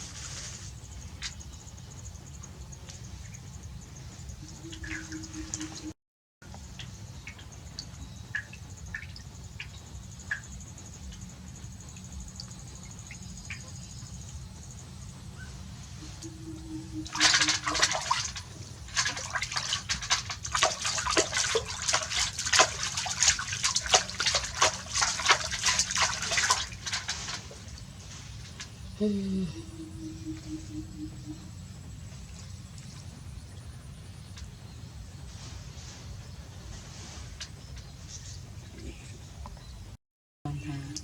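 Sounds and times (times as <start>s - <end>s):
low hum: 0.0s - 41.0s
water splashing and sloshing: 2.3s - 11.3s, 15.4s - 28.9s, 30.0s - 38.8s.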